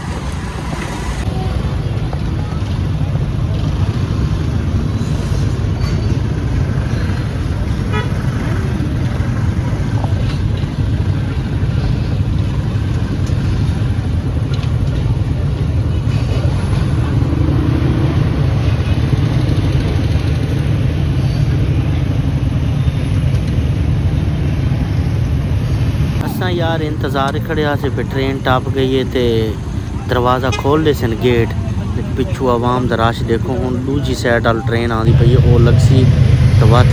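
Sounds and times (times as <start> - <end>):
train rumbling past: 0.0 - 36.9
vehicle horn tooting: 7.8 - 8.7, 30.3 - 31.1.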